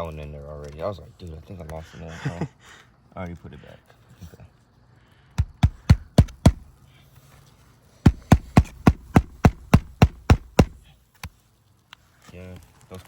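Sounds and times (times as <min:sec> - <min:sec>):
hammer driving nails into shingles: 0:05.4 - 0:06.7, 0:08.1 - 0:10.9.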